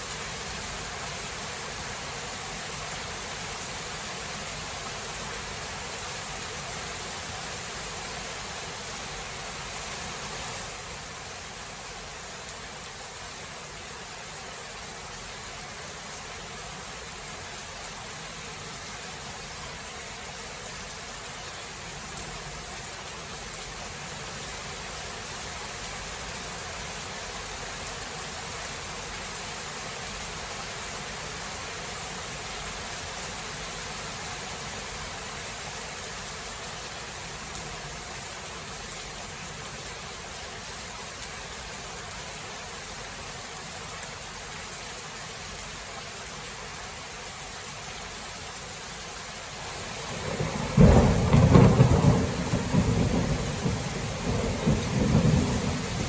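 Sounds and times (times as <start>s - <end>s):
steady rain: 0.0s - 56.0s
thunder crack and rumble: 50.0s - 56.0s.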